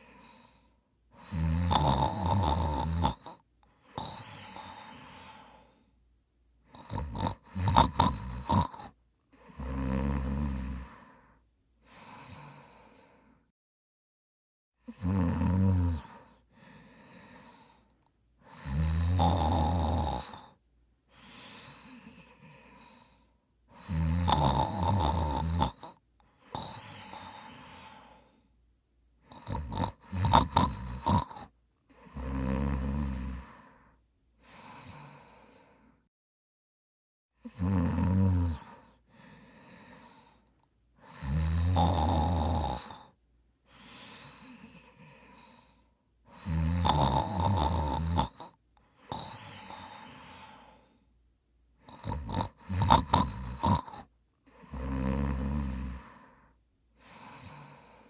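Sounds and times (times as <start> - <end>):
person snoring loudly: 1.2 - 5.7, 6.7 - 11.2, 14.8 - 17.8, 18.4 - 20.6, 23.8 - 28.3, 29.3 - 33.8, 37.4 - 40.4, 41.0 - 50.9, 51.8 - 56.4.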